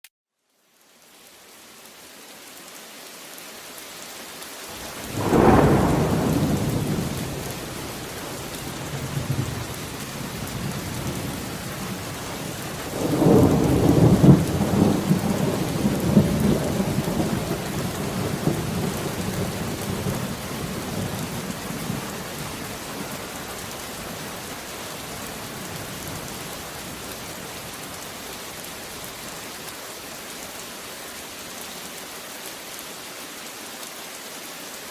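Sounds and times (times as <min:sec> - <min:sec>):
steady rain falling: 0:00.4 - 0:34.9
rolling peal of thunder: 0:04.8 - 0:22.8
thunderclap rumbling: 0:04.8 - 0:24.5.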